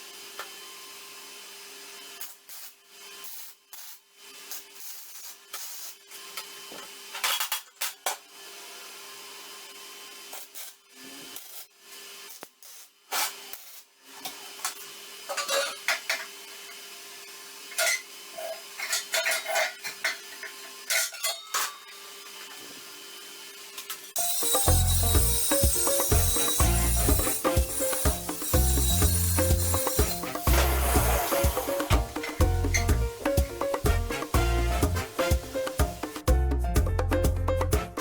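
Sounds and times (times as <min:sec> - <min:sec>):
tools scraping and clattering: 0:14.2 - 0:16.4, 0:17.7 - 0:18.1, 0:18.8 - 0:22.7, 0:23.8 - 0:33.0.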